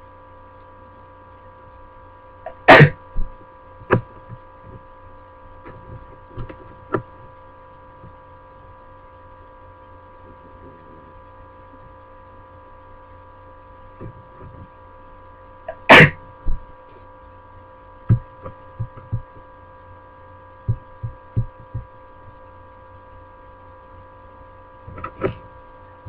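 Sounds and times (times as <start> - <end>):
electrical hum: 0.0 - 26.0
person sneezing: 2.5 - 3.0, 15.7 - 16.2
soft low thumps: 18.0 - 19.5, 20.6 - 22.4.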